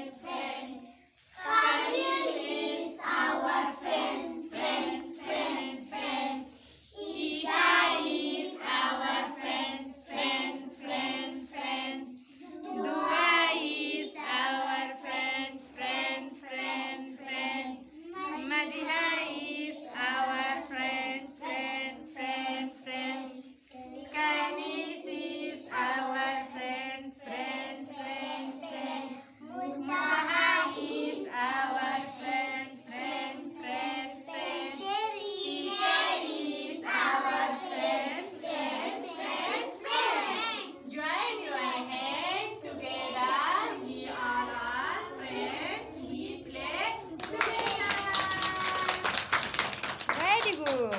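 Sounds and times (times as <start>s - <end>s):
children singing together: 0.0s - 49.1s.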